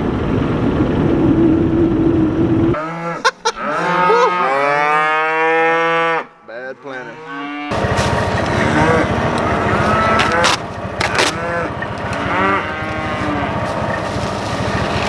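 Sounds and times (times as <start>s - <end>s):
vehicle engine running: 0.0s - 2.8s, 7.7s - 15.0s
cattle mooing: 2.7s - 15.0s.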